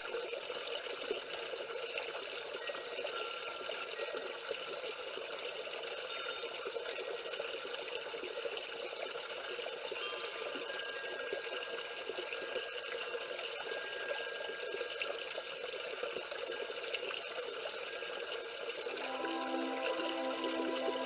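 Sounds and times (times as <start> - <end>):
soft music tones: 18.7 - 21.0.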